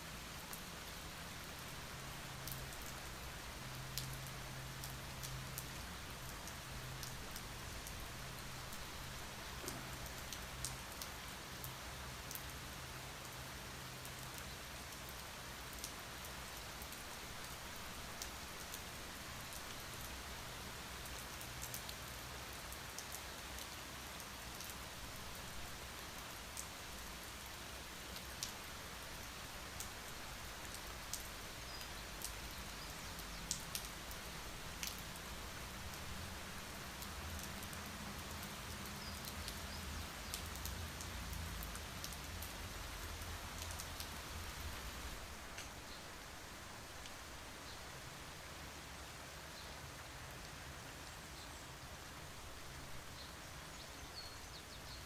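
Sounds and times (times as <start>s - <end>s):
steady rain falling: 0.0s - 55.0s
raindrops ticking: 28.1s - 44.9s.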